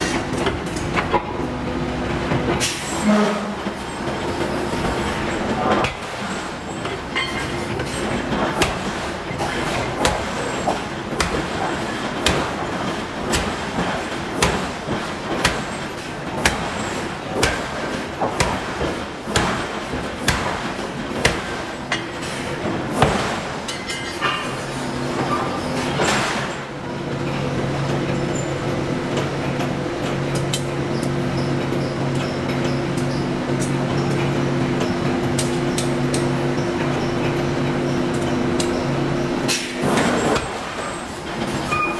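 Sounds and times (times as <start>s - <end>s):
forging hammer striking hot steel: 7.2s - 14.8s, 15.4s - 22.1s
machinery hum: 24.3s - 41.9s.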